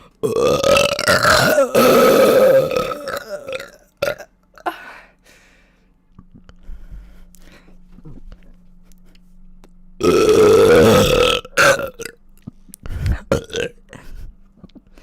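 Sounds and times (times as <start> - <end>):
woman burping loudly: 0.0 - 4.8, 10.0 - 12.2, 13.2 - 13.8.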